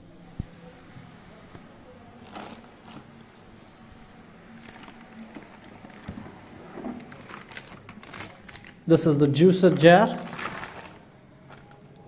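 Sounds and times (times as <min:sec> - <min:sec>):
packaging rustling: 0:02.2 - 0:03.2, 0:04.7 - 0:11.8.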